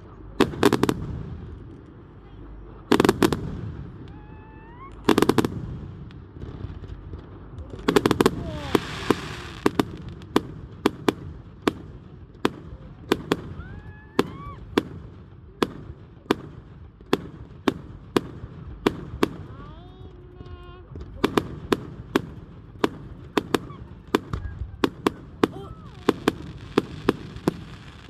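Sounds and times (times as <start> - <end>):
firework bangs: 0.0 - 28.0
hissing crackle of fireworks: 0.0 - 28.0
rising firework whistles: 8.0 - 9.9.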